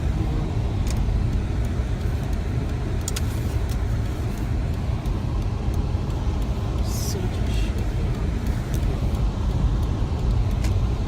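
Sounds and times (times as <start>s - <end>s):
car engine rumble: 0.0s - 11.0s
tyre road noise: 0.0s - 11.0s.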